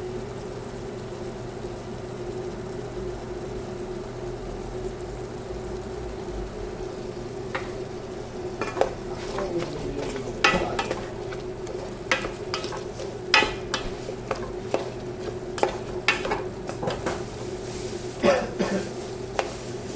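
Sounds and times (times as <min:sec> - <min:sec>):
food sizzling in a pan: 0:00.2 - 0:19.9
steady hum: 0:06.7 - 0:19.9
utensil scraping a pan: 0:07.5 - 0:19.9.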